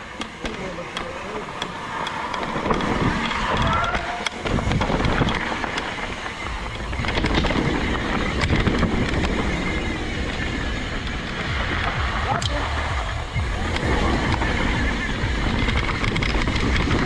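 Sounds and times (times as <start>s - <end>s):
mountain bike rattling on trail: 0.0s - 17.0s
sharp clicks and knocks from bike: 0.0s - 17.0s
wind rushing over microphone: 0.0s - 17.0s.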